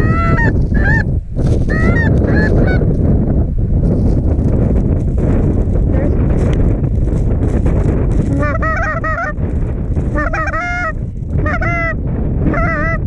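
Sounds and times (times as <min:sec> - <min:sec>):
goose honking: 0:00.0 - 0:01.0, 0:08.3 - 0:09.4, 0:10.1 - 0:13.0
wind on microphone: 0:00.0 - 0:13.0.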